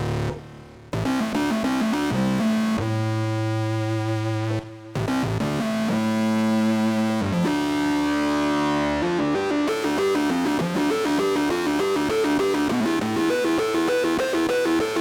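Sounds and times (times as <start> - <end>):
synthesizer held notes and chords: 5.1 - 15.0.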